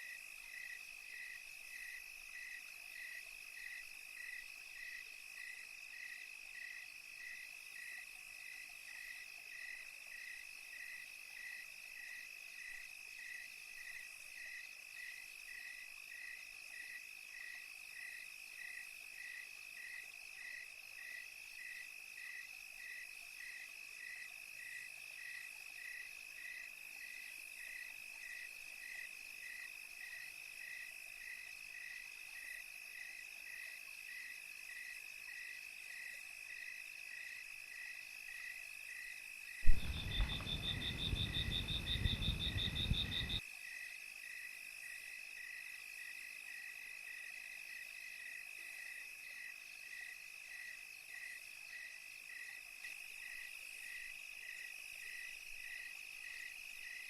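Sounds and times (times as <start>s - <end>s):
cricket chirping: 0.0s - 57.0s
cricket trilling: 38.9s - 43.4s
faint high hiss: 39.7s - 43.4s.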